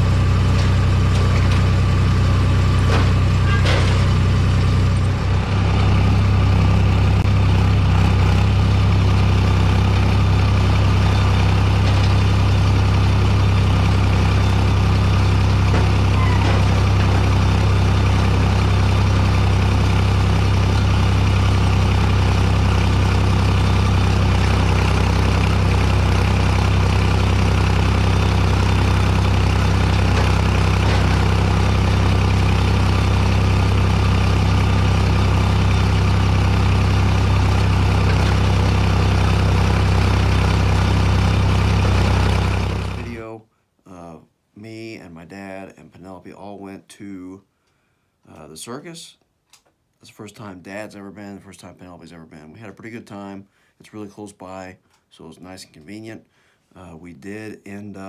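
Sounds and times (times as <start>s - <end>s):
tractor diesel engine humming: 0.0s - 43.3s.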